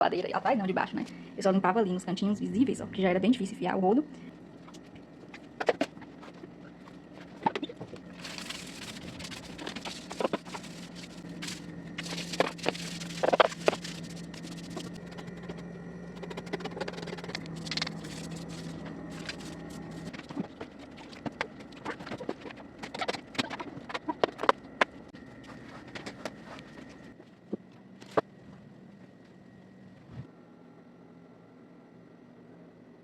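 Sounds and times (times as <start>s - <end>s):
steady low hum: 0.0s - 33.0s.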